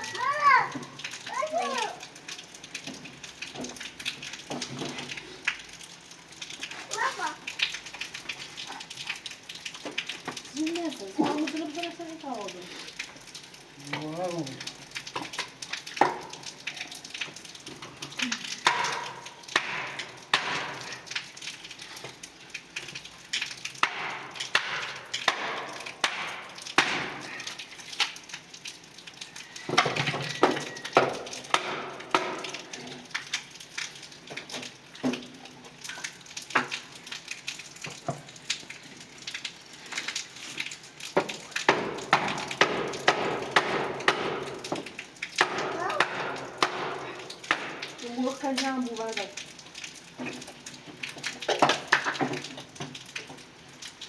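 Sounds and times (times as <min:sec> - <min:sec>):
wood chopping: 0:18.6 - 0:20.8, 0:23.8 - 0:27.2, 0:31.0 - 0:32.5, 0:41.7 - 0:44.8, 0:45.4 - 0:47.8.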